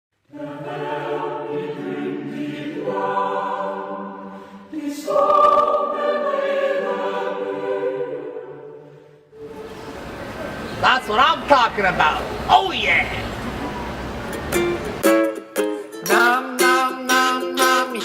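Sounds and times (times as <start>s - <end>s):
choir singing sustained chords: 0.2s - 10.7s.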